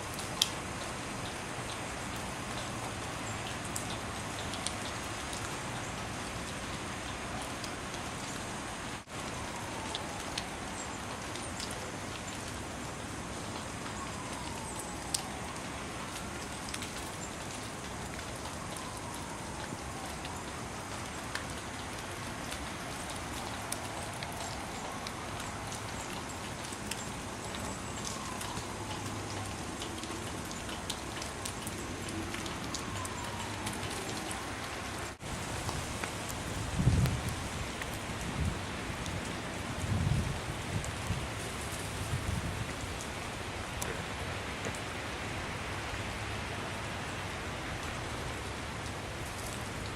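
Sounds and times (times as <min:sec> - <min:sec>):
hiss of wet snow falling: 0:00.0 - 0:49.9
wet snow hissing and ticking: 0:35.2 - 0:39.8, 0:40.4 - 0:44.2.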